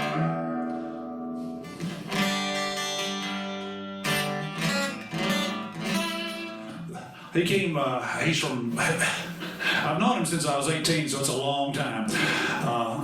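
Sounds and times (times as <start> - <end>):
acoustic guitar strumming chords: 0.0 - 7.3.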